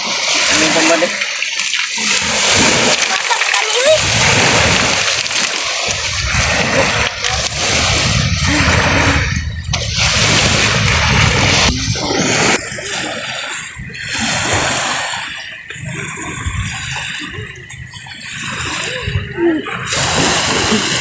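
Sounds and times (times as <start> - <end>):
water splashing and sloshing: 0.0 - 21.0.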